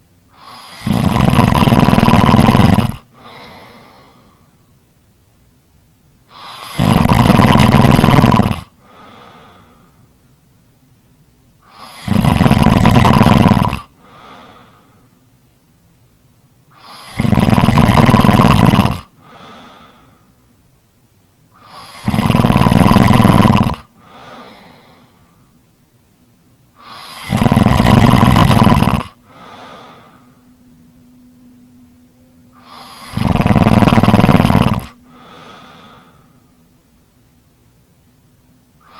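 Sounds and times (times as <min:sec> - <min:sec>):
loud snoring: 0:00.3 - 0:03.7, 0:06.3 - 0:08.8, 0:11.7 - 0:14.0, 0:16.7 - 0:19.6, 0:21.6 - 0:23.9, 0:26.8 - 0:30.4, 0:32.5 - 0:36.2
faint short breath: 0:08.8 - 0:10.1, 0:14.0 - 0:15.1, 0:19.2 - 0:20.4, 0:24.0 - 0:25.5, 0:29.2 - 0:30.5, 0:35.0 - 0:36.6.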